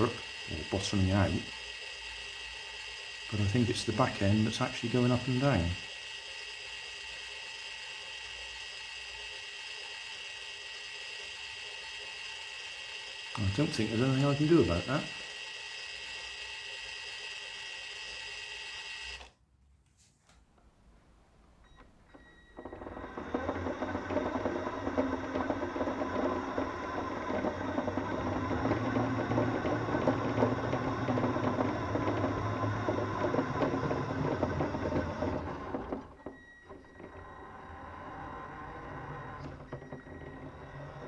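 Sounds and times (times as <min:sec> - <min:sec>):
toy car motor and gears clattering: 0:00.0 - 0:19.3.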